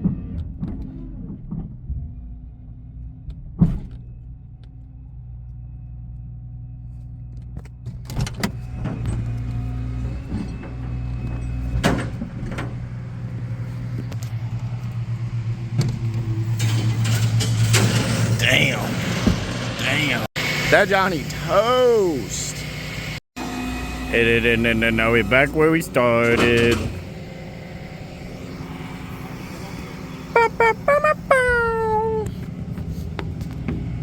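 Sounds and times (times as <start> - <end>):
vehicle engine running: 2.1 - 17.6, 18.4 - 34.0.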